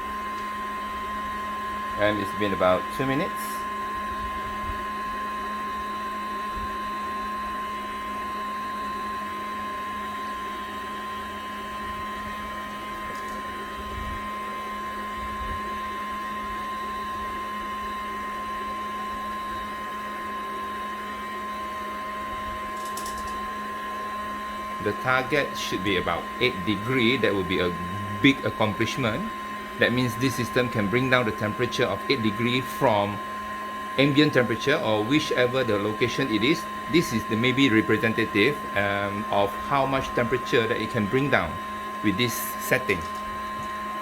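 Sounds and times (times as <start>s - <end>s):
air conditioner pump humming: 0.0s - 44.0s
high-pitched whine: 24.8s - 33.4s.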